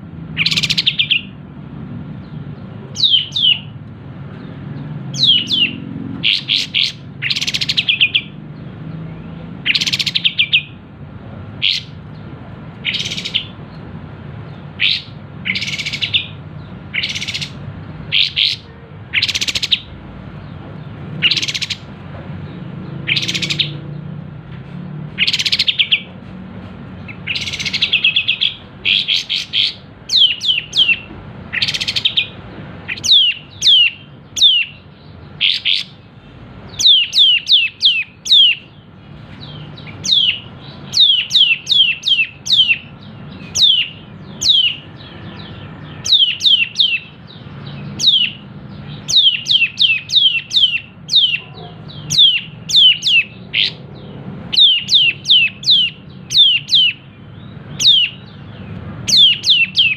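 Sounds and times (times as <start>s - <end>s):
bird singing high slurred notes: 0.4s - 1.4s, 5.0s - 10.8s, 11.6s - 12.2s, 12.8s - 13.9s, 14.5s - 20.5s, 21.1s - 21.9s, 22.8s - 24.0s, 25.2s - 26.2s, 27.0s - 59.9s
buzzy bird trills: 12.8s - 13.8s, 27.1s - 57.1s.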